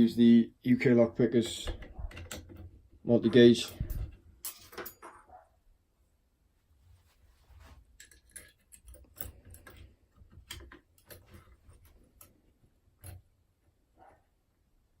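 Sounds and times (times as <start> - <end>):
lock pick tools clicking in lock: 8.0 - 11.2.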